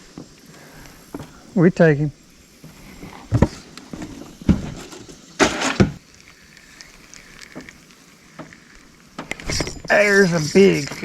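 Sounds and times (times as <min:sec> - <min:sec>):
clattering burst: 0:02.7 - 0:06.0
faint ticks: 0:06.0 - 0:11.0.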